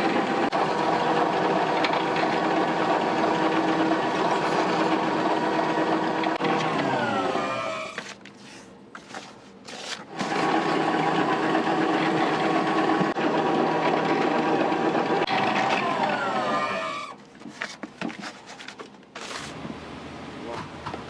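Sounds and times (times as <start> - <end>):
kitchen machine motor whine: 0.0 - 8.0, 10.1 - 17.2.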